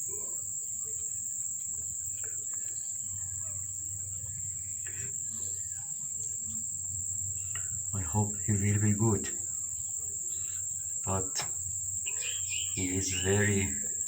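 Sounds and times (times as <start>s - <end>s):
crickets chirring: 0.0s - 14.0s.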